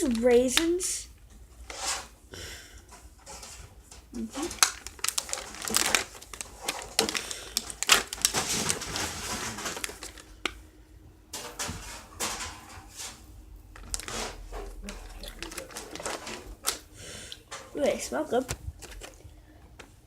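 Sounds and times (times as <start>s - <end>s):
plastic packaging crinkling: 4.2s - 10.6s, 13.7s - 16.9s, 17.8s - 19.3s.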